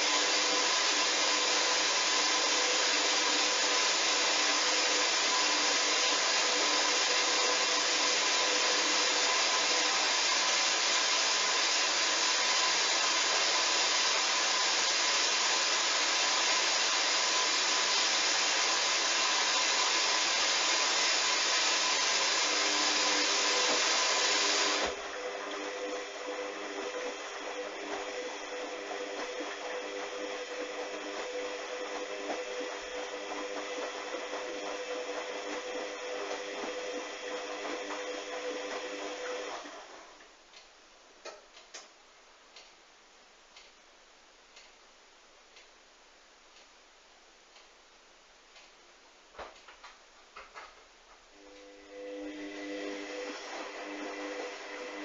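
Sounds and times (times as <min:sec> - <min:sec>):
washing machine filling with water: 0:00.0 - 0:40.2, 0:51.4 - 0:55.0.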